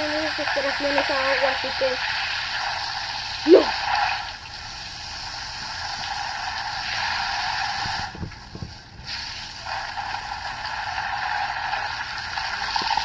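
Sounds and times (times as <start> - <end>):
garden hose spraying water: 0.0 - 13.0.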